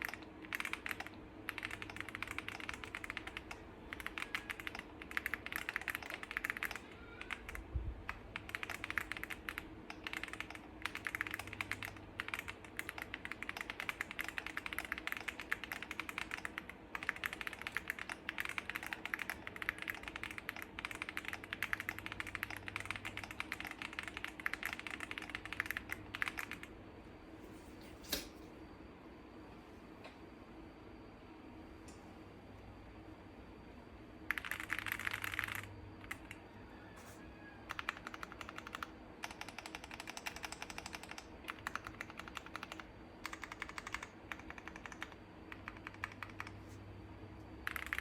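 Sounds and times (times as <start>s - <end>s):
fast typing on mechanical keyboard: 0.0s - 26.7s, 34.3s - 36.4s, 37.6s - 46.7s, 47.6s - 48.0s.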